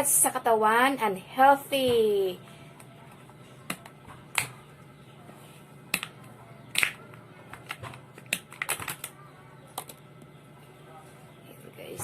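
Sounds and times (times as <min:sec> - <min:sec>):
plastic container clicks and crackles: 0:06.7 - 0:10.0.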